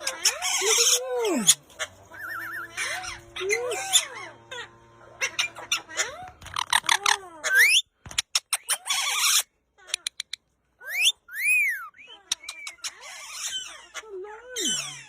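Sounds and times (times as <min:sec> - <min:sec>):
bird squawk: 0:00.0 - 0:07.9
pet birds calling: 0:00.0 - 0:15.0
bird whistles: 0:02.2 - 0:02.7, 0:07.5 - 0:07.8, 0:10.8 - 0:12.9
bird clicks: 0:09.9 - 0:10.4.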